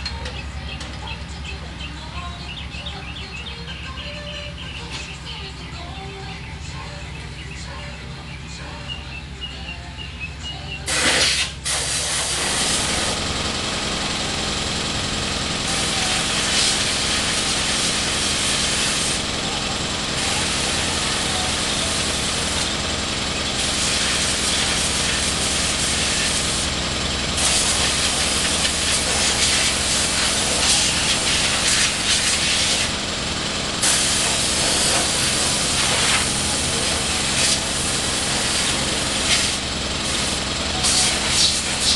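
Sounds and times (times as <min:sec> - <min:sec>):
compressed air hissing: 0:10.9 - 0:13.2, 0:15.7 - 0:19.2, 0:23.4 - 0:26.7, 0:27.4 - 0:33.0, 0:33.8 - 0:41.9.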